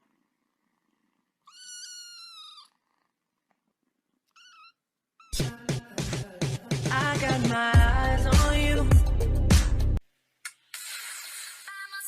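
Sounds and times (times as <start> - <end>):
cat meowing: 1.4 - 2.8, 4.3 - 5.4.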